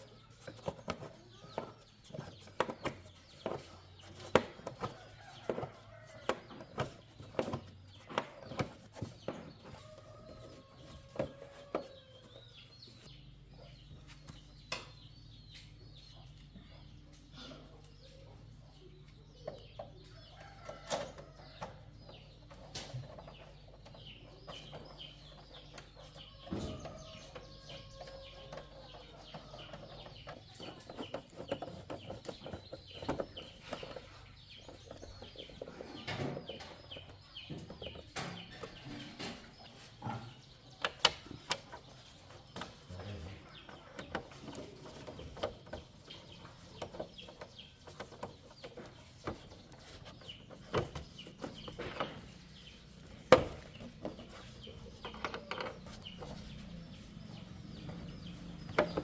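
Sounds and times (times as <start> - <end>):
chickens clucking: 0.0 - 59.0
sharp clicks and knocks: 19.4 - 59.0.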